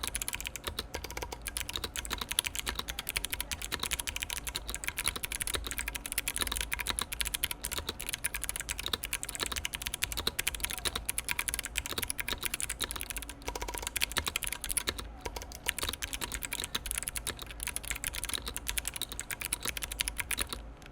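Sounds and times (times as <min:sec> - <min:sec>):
fast typing on mechanical keyboard: 0:00.0 - 0:20.9.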